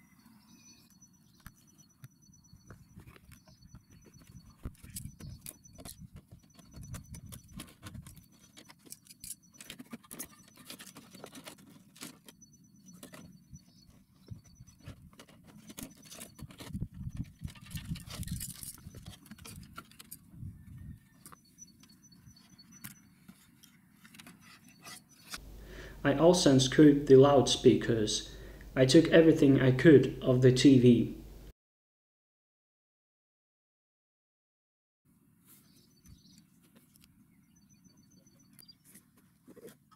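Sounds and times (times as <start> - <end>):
screws and parts clicking and rattling: 4.8 - 13.3, 14.8 - 20.2.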